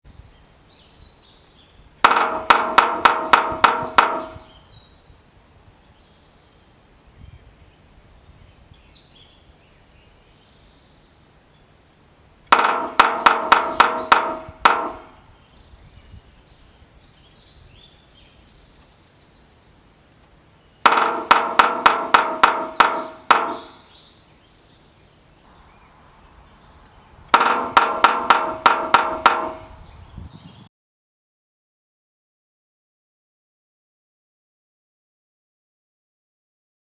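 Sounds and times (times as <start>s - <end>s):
woodpecker drumming on metal: 2.0s - 4.6s, 12.5s - 15.3s, 20.8s - 24.0s, 25.5s - 30.0s.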